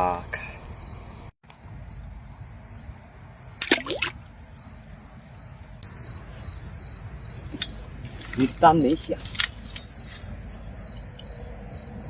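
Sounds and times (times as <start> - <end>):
crickets chirping: 0.0 - 12.0
loud splash: 3.6 - 4.2.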